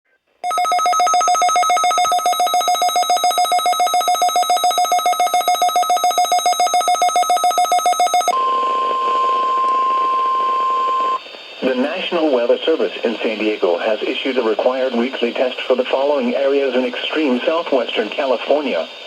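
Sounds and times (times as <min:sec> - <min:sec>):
pulsing buzzy alarm tone: 0:00.4 - 0:11.2
steady warning alarm tone: 0:00.4 - 0:11.2.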